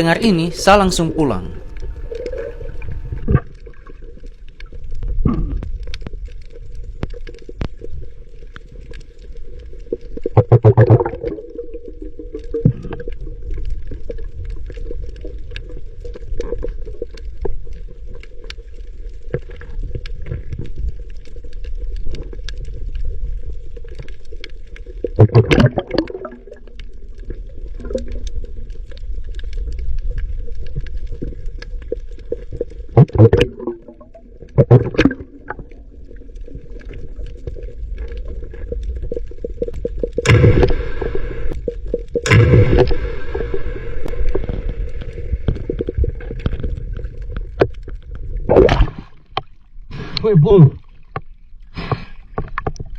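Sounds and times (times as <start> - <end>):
low underwater hum: 0.0 - 52.9
crackling clicks: 1.6 - 50.2, 50.8 - 52.9
underwater booms: 10.3 - 11.4, 25.2 - 26.6, 32.9 - 35.9, 40.1 - 47.7, 48.4 - 49.2.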